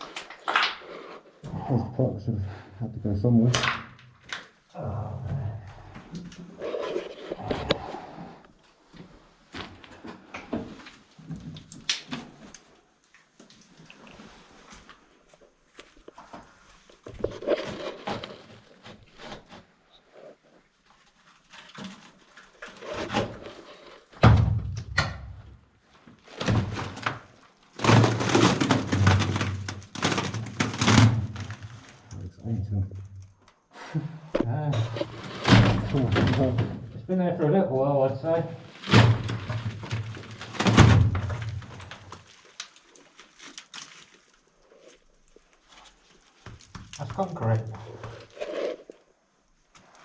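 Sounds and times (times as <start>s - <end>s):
rustling: 10.6s - 24.2s, 34.8s - 37.1s, 38.1s - 50.0s
knocks and thuds: 24.2s - 25.5s, 35.3s - 37.0s, 38.8s - 41.8s.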